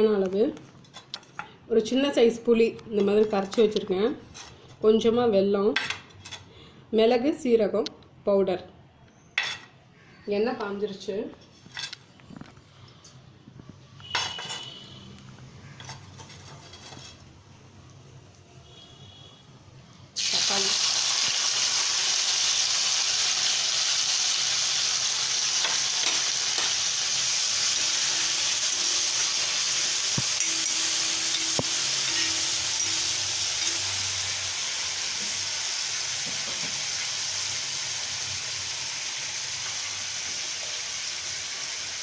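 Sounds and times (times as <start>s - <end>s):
tomato sizzling in hot oil: 20.2s - 42.0s.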